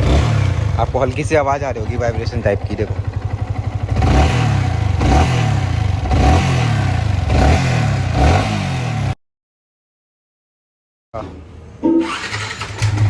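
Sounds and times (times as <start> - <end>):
motorcycle engine revving: 0.0 - 9.2, 12.0 - 13.0.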